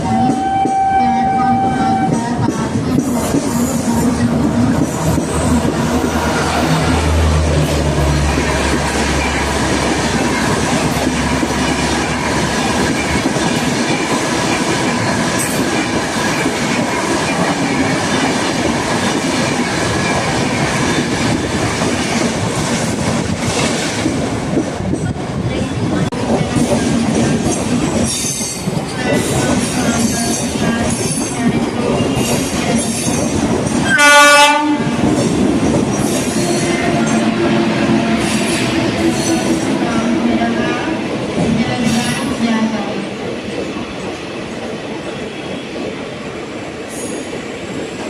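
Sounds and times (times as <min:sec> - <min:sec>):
train wheels rushing on rails: 0:00.0 - 0:48.0.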